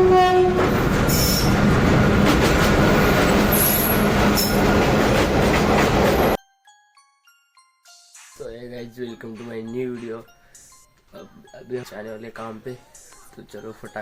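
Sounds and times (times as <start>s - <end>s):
train wheels rumbling on rails: 0.5s - 6.4s
wheel squeals: 3.0s - 4.7s
tinkling chime notes: 6.4s - 14.0s.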